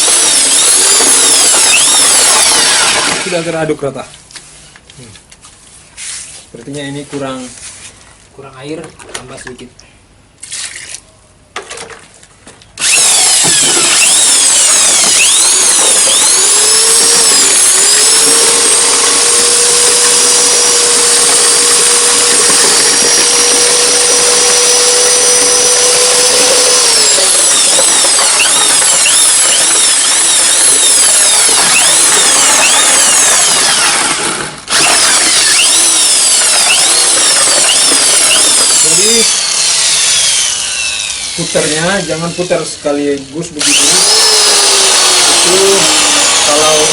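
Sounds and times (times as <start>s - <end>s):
paddle churning mortar: 0.0s - 3.5s, 12.8s - 42.0s
mixer drill motor whine: 0.0s - 3.6s, 12.8s - 42.8s, 43.6s - 46.9s.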